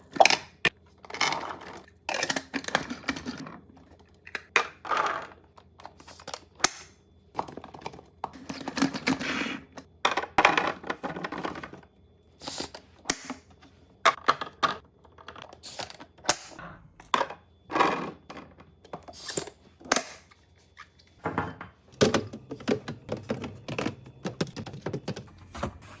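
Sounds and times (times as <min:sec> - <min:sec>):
containers clicking and knocking: 0:21.3 - 0:25.3.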